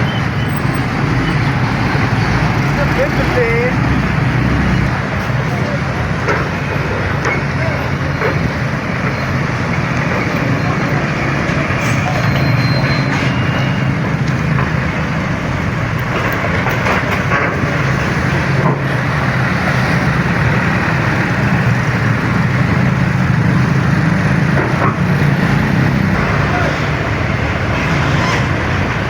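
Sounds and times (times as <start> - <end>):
vehicle engine and road noise: 0.0 - 29.0.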